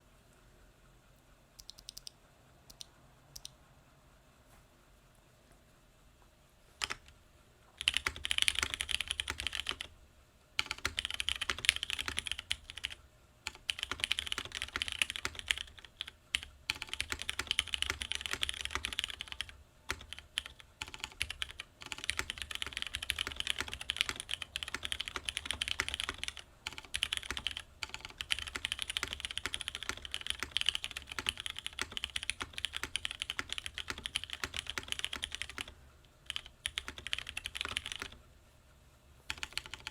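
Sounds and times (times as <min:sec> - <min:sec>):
fast typing on mechanical keyboard: 0:06.8 - 0:07.1, 0:07.8 - 0:09.9, 0:10.6 - 0:38.2, 0:39.3 - 0:39.9.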